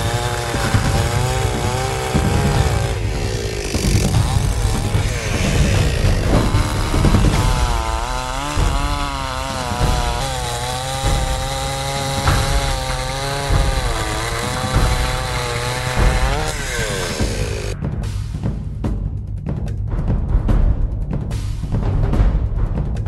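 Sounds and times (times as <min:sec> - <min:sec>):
chainsaw running at high revs: 0:00.0 - 0:17.8.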